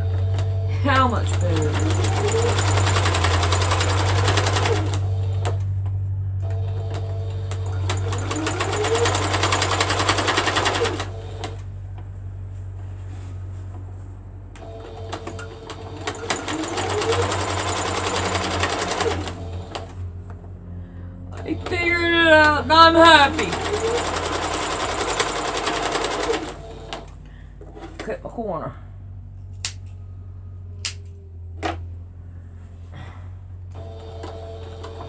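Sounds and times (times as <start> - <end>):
sewing machine stitching: 0.0 - 5.6, 6.8 - 11.6, 14.6 - 20.0, 21.4 - 27.1, 33.8 - 35.0
steady low hum: 0.0 - 34.6.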